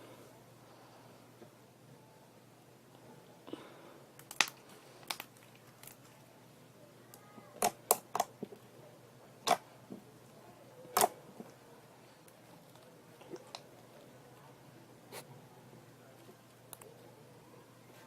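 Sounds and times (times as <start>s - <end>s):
slime clicking and popping: 4.2s - 5.3s.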